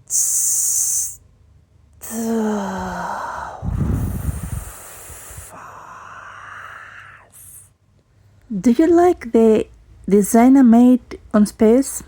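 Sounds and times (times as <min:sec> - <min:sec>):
breathy rush of air: 0:02.0 - 0:07.8
soft hiss: 0:03.0 - 0:08.6.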